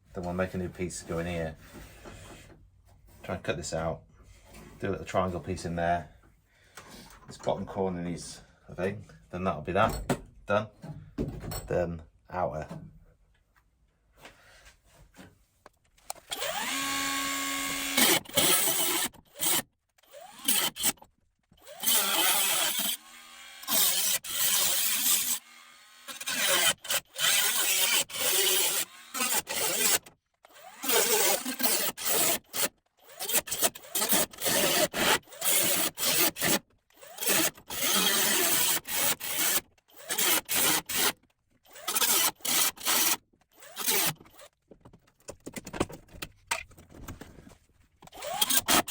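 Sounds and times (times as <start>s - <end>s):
tool cutting steel: 16.2s - 44.5s, 48.0s - 48.9s
power cutting tool whine: 16.3s - 20.9s, 21.6s - 36.1s.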